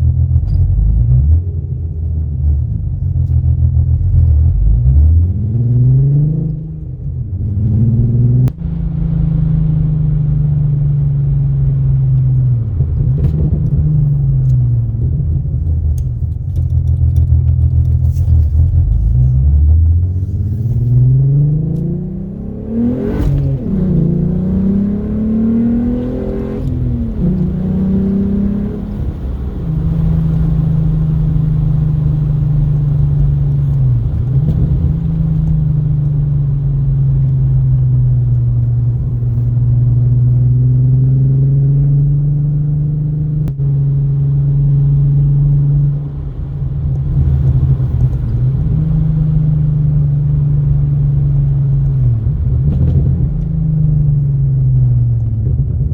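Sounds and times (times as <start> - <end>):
car engine revving: 0.0 - 55.9
exhaust pops: 12.0 - 41.2, 45.8 - 55.9.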